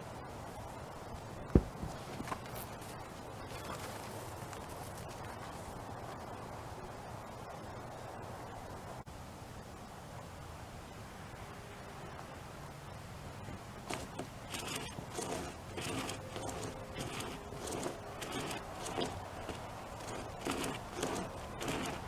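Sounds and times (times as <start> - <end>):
rope chainsaw scraping branch: 13.6 - 22.0.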